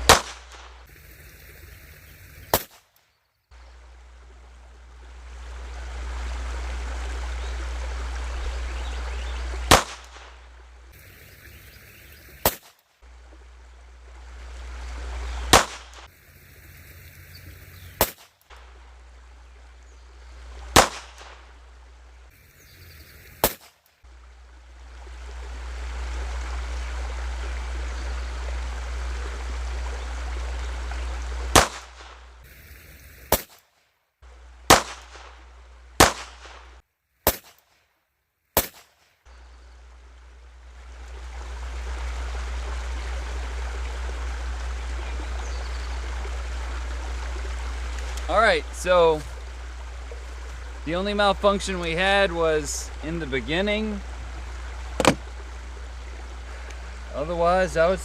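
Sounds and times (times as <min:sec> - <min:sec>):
pistol shots: 0:00.0 - 0:00.8, 0:09.7 - 0:10.3, 0:15.5 - 0:16.0, 0:20.8 - 0:21.4, 0:23.4 - 0:23.8, 0:31.5 - 0:32.2, 0:33.3 - 0:33.6, 0:34.7 - 0:35.4, 0:36.0 - 0:36.6, 0:37.3 - 0:37.6, 0:38.6 - 0:39.0.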